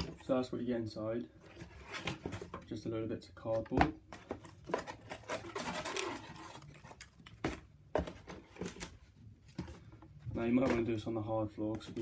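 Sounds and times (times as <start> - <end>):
cardboard pieces rustling: 4.2 - 9.0.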